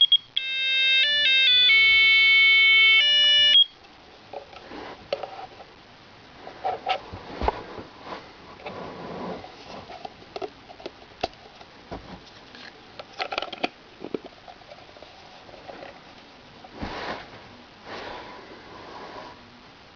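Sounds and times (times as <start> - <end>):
rustling: 6.4 - 19.5.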